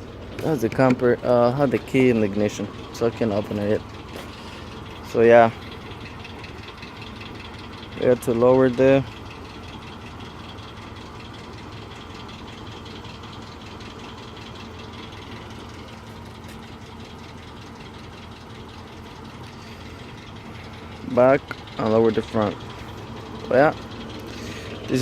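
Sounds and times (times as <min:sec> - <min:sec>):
pickup engine idling: 0:00.0 - 0:25.0.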